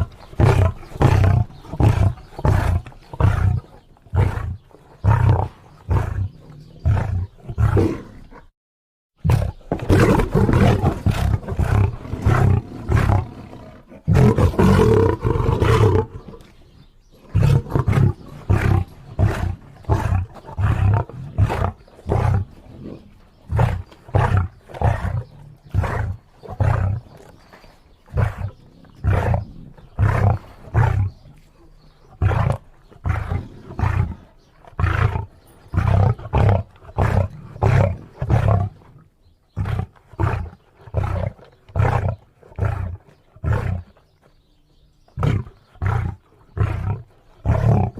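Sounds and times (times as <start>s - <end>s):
lion roaring: 0.0s - 8.4s, 9.2s - 16.5s, 17.2s - 31.4s, 39.6s - 44.0s, 45.2s - 47.9s
lion grunting: 0.0s - 8.5s, 9.2s - 44.4s, 45.0s - 47.9s.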